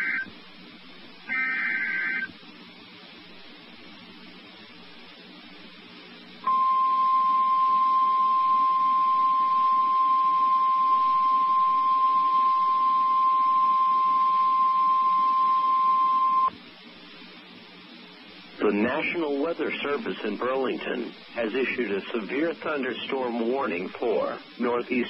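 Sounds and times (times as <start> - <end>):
steady radio alarm tone: 0.0 - 0.4, 1.3 - 2.3, 6.4 - 16.5
faint hiss: 0.0 - 25.0.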